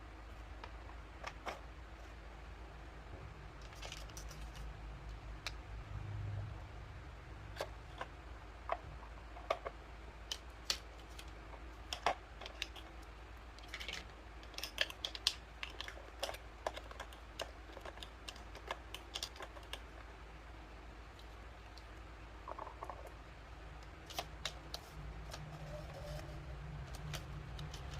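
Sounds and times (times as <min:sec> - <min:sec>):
faint low hum: 0:00.0 - 0:27.9
plastic toy pieces clicking: 0:07.6 - 0:13.0, 0:13.6 - 0:19.9, 0:26.9 - 0:27.9.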